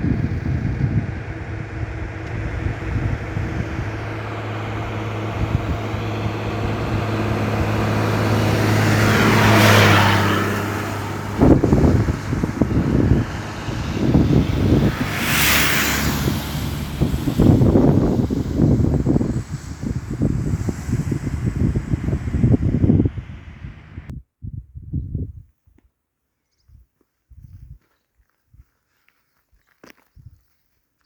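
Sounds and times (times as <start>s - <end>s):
vehicle passing close: 0.0s - 24.1s
vehicle rushing past: 0.0s - 24.1s
wind noise on microphone: 0.0s - 25.9s, 26.6s - 27.9s, 28.5s - 28.8s, 30.1s - 30.6s.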